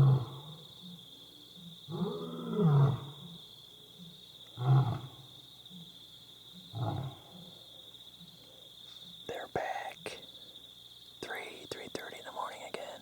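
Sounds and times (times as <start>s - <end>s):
lioness roaring: 1.9s - 3.1s, 4.6s - 5.1s, 6.7s - 7.2s.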